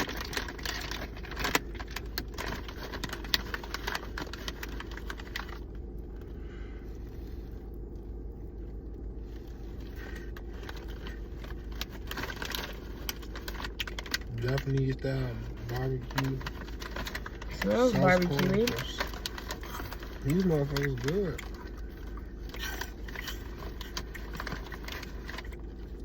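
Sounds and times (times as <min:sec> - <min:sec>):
plastic snack bag crinkling: 0:00.0 - 0:06.2, 0:09.3 - 0:26.0.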